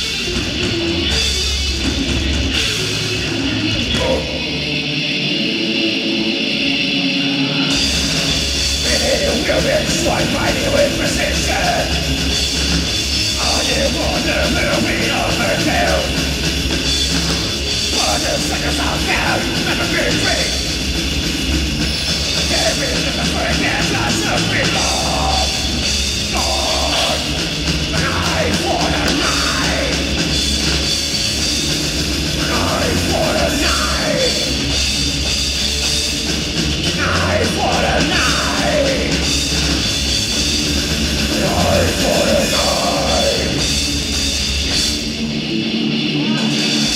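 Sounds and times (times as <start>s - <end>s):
drum kit: 0.0s - 4.8s, 7.7s - 46.9s
bass guitar: 0.0s - 46.9s
distorted electric guitars: 0.0s - 46.9s.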